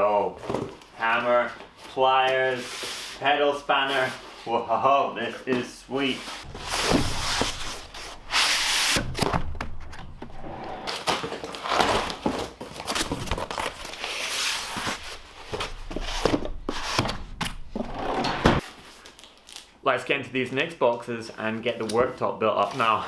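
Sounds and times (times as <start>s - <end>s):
packaging rustling: 10.8s - 17.8s, 18.6s - 19.7s.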